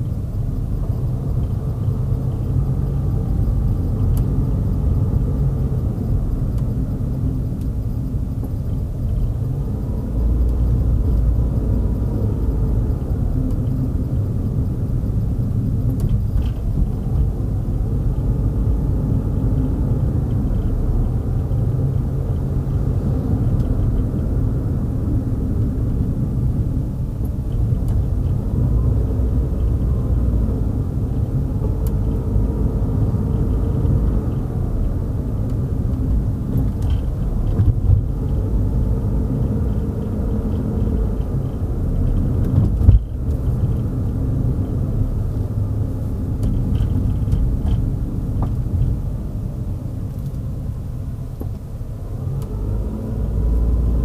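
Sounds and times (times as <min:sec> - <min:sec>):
car engine and tyre rumble: 0:00.0 - 0:54.0
car going over bump: 0:00.0 - 0:54.0.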